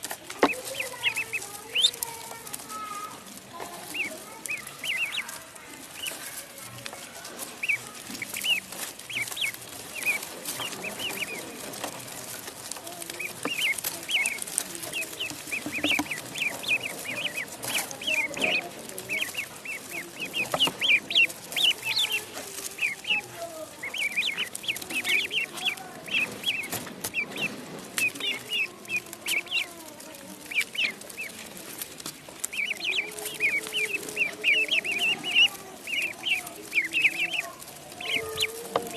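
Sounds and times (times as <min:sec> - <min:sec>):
ducklings peeping: 0:00.0 - 0:38.9.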